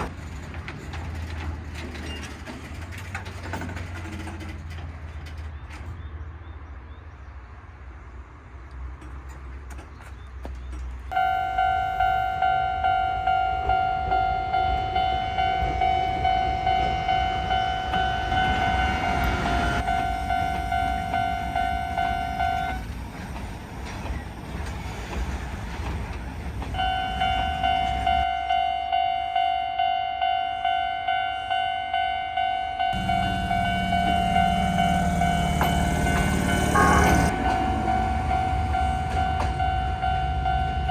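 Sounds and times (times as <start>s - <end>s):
level-crossing warning bell: 11.1s - 23.0s, 26.7s - 40.9s.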